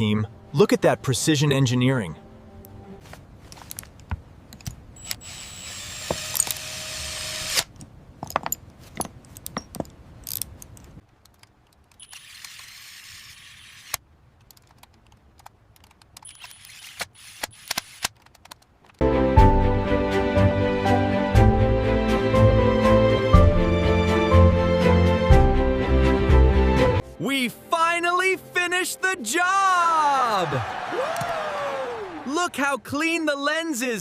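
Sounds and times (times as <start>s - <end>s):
high whirring of small drill: 5.0s - 7.7s, 12.0s - 14.0s.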